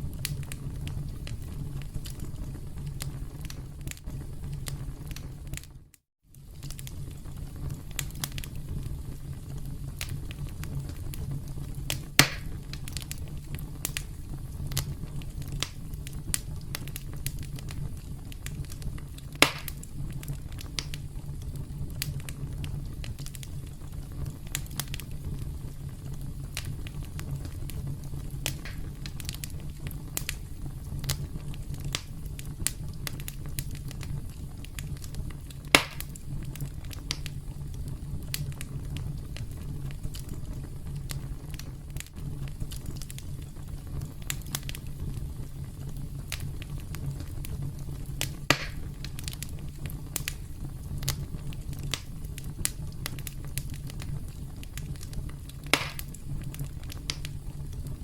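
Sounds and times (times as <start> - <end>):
campfire crackling: 0.0 - 58.0
loud fire pops: 0.0 - 58.0.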